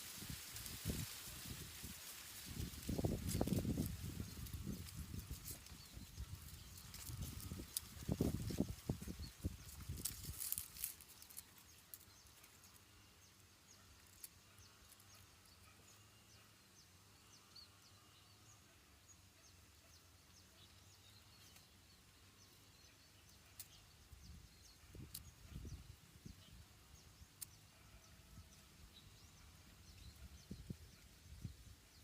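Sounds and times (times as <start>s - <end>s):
faint rustling: 0.0s - 12.8s.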